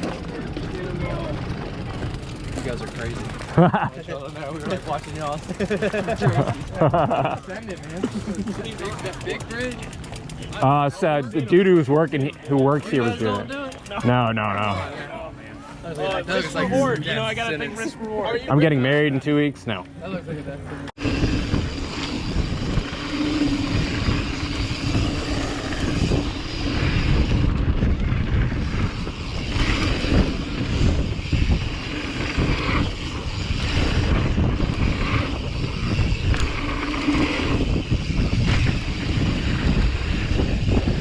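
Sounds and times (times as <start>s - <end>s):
bike tyres rolling on dirt: 0.0s - 15.1s, 21.0s - 41.0s
wind buffeting microphone: 21.0s - 41.0s.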